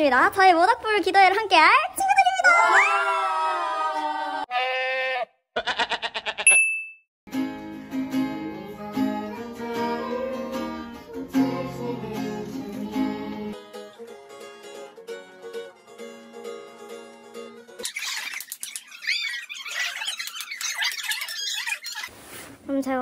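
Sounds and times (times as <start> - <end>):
high ding: 6.5 - 7.0
upbeat plucked string music: 7.3 - 17.8.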